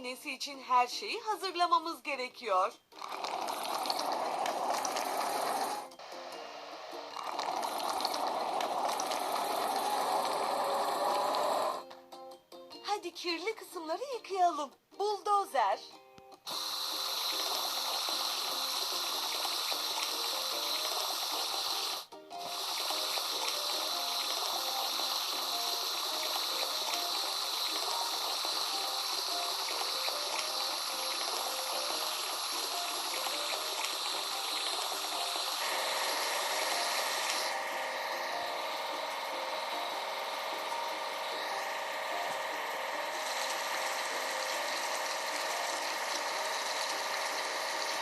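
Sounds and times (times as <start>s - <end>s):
light background music: 0.0s - 48.0s
water spraying: 3.1s - 5.9s, 7.2s - 11.7s, 16.5s - 38.0s, 38.6s - 48.0s.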